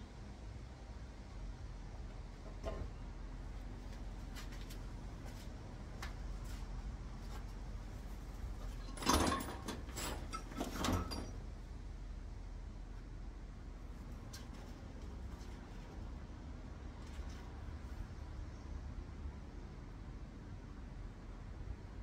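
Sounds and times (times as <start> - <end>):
metal parts clinking and rattling: 8.7 - 11.4.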